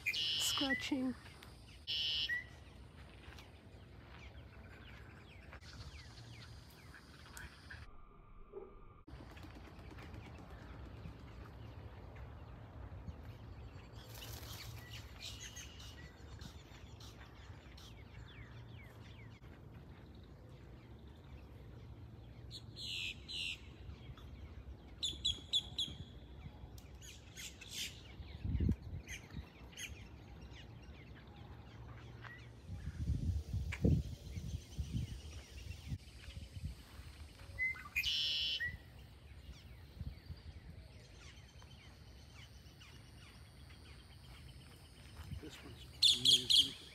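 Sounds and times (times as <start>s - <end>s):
small birds chirping: 9.7s - 46.9s.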